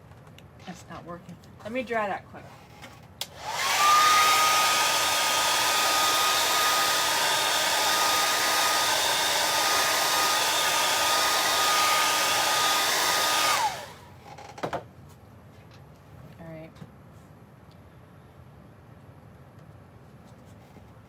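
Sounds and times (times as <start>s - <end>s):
hair dryer blowing: 3.2s - 14.2s.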